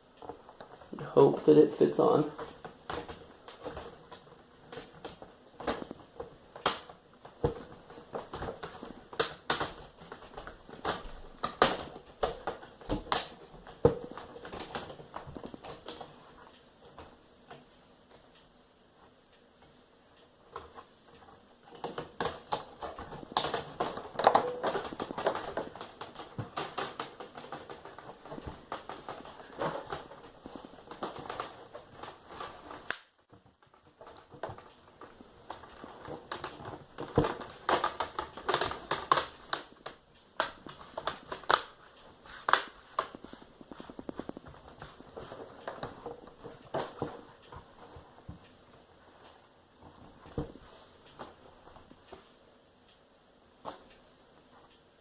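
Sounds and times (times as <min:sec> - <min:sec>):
small plastic clicks and snaps: 0:30.9 - 0:34.8.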